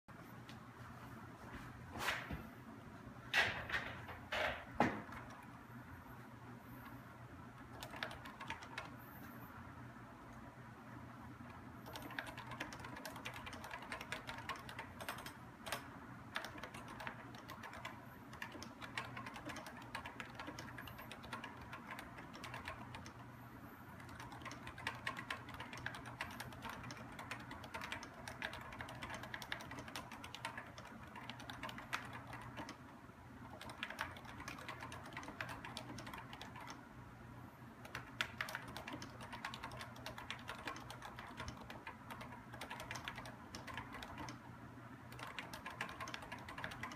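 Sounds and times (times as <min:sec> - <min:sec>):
fast typing on a keyboard: 0:07.6 - 0:09.1, 0:11.8 - 0:23.3, 0:23.9 - 0:36.9, 0:37.8 - 0:44.5, 0:45.1 - 0:46.9.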